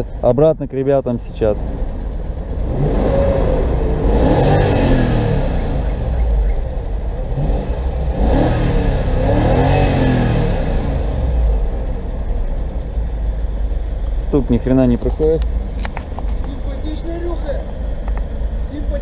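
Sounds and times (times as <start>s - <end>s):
engine knock: 0.1s - 4.2s
car engine revving: 1.0s - 19.0s.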